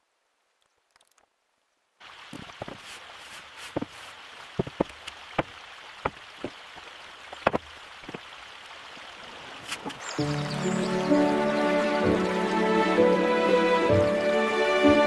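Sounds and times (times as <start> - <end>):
steady rain: 0.0 - 15.0
drops tapping: 4.6 - 8.3.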